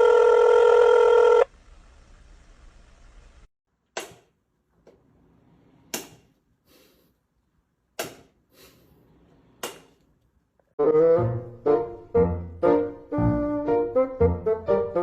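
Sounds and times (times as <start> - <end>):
brass music: 10.8 - 15.0.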